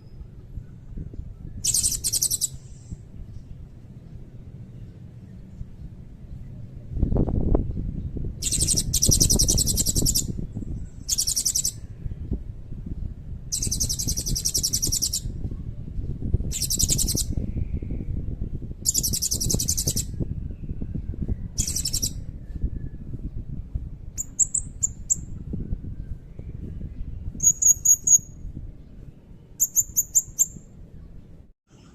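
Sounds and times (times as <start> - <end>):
parrot high rapid trilling: 1.7 - 2.5
low rumble: 20.1 - 29.5.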